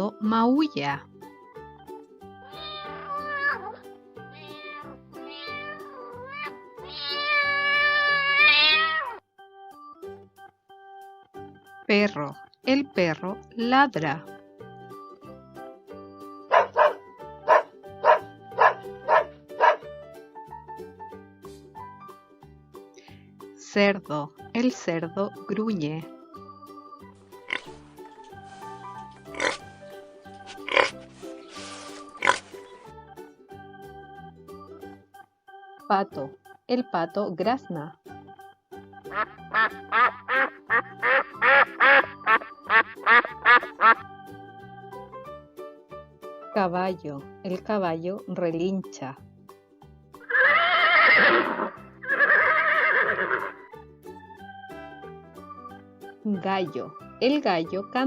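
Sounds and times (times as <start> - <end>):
light background music: 0.0 - 58.0
dog barking: 16.5 - 19.9
duck quacking: 39.2 - 44.0.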